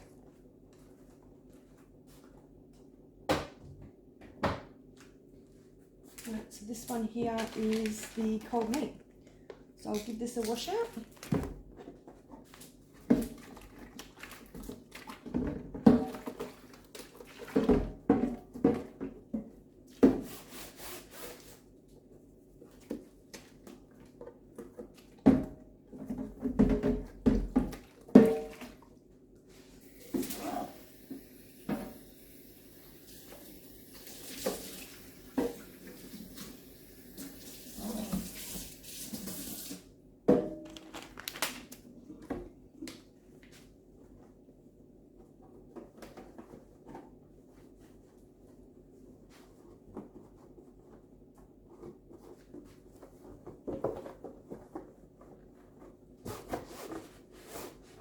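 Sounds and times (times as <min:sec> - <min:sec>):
plastic container knocking in sink: 0:25.2 - 0:28.8
tap water running: 0:29.8 - 0:39.9.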